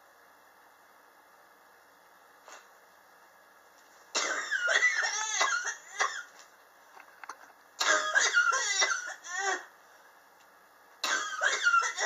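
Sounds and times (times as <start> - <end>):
person coughing: 4.2 - 6.3, 7.8 - 9.7, 11.0 - 12.0.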